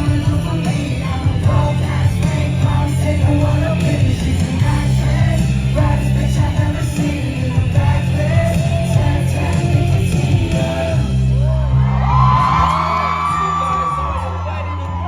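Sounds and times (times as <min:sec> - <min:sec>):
person singing: 0:00.0 - 0:14.2
music with heavy bass: 0:00.0 - 0:15.0.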